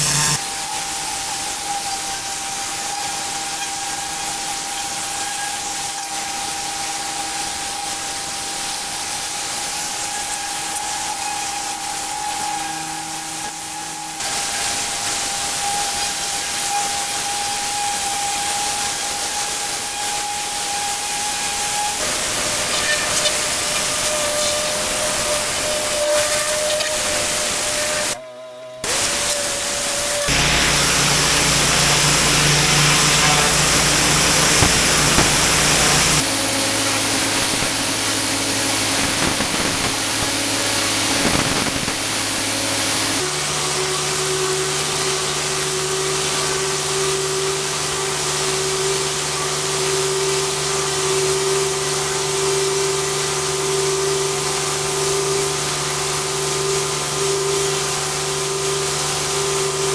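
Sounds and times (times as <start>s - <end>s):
pressure washer jet hissing: 0.0s - 28.2s, 28.8s - 59.9s
engine and pump hum: 30.3s - 43.6s.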